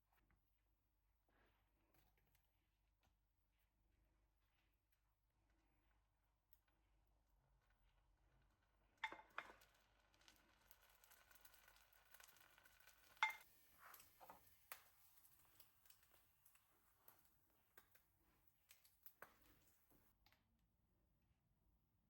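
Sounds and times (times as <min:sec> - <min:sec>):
kitchenware clinking: 0:13.2 - 0:14.5.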